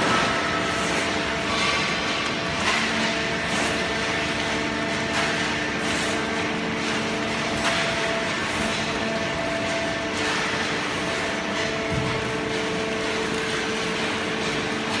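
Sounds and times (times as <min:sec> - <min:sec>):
baling press machine hum: 0:00.0 - 0:15.0.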